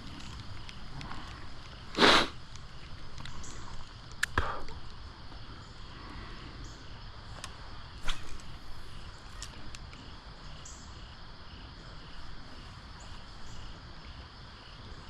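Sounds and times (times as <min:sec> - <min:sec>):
outdoor hiss: 0:00.0 - 0:15.0
sharp click: 0:04.2 - 0:04.5
fishing rod whoosh: 0:08.0 - 0:08.6.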